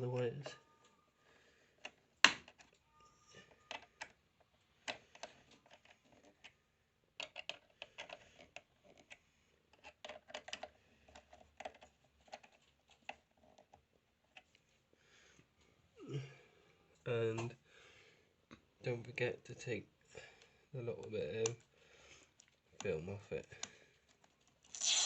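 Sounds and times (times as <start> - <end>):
clicks and taps on computer parts: 7.2 - 9.2.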